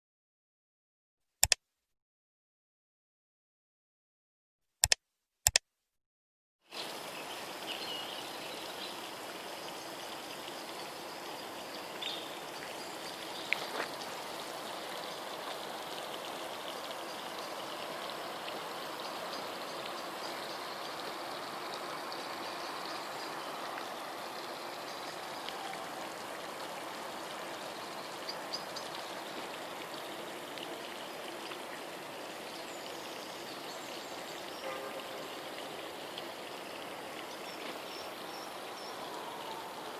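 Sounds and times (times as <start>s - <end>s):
sharp click: 4.8s - 5.6s
water running steadily: 6.6s - 39.9s.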